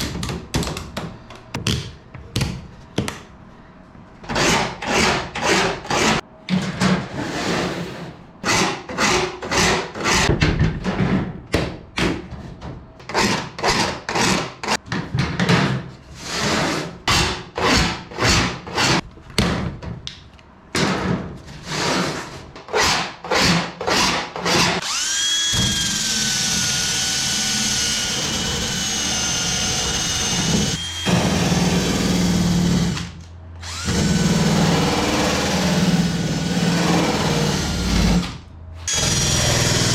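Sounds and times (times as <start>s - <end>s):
rotary tool high whine: 24.8s - 33.0s.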